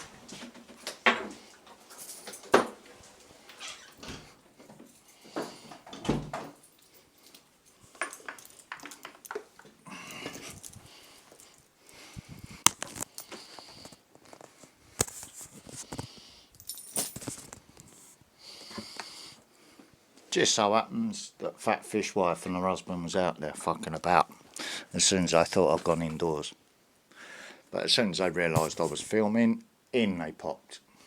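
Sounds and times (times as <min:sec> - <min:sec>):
light metallic jingle: 0:01.8 - 0:02.6, 0:06.3 - 0:09.4, 0:16.5 - 0:17.5.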